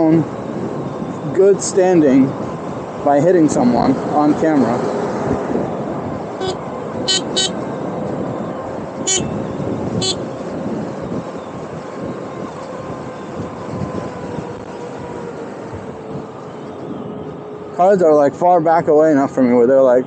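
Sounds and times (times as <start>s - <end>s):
electric horn beeping: 6.4s - 7.6s, 9.0s - 9.4s, 10.0s - 10.2s.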